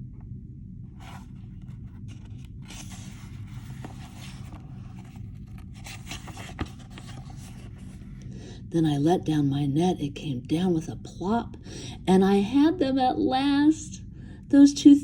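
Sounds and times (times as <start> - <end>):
low background hum: 0.0 - 15.0
book pages rustling and turning: 1.0 - 8.3.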